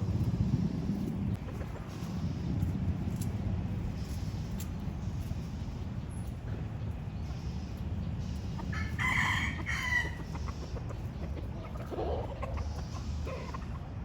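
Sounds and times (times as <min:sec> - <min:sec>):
steady low rumble: 0:00.0 - 0:14.0
rooster crowing: 0:08.7 - 0:10.3.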